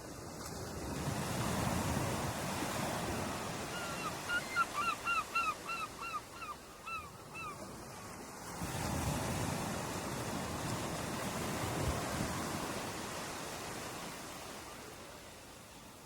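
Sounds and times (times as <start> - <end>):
ocean waves breaking on beach: 0.0 - 16.0
gull calling: 3.7 - 7.6.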